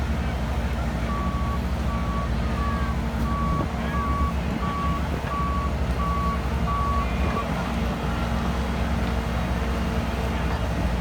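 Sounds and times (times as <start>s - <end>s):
diesel engine rumble: 0.0s - 11.0s
reverse alarm beeping: 1.1s - 7.1s.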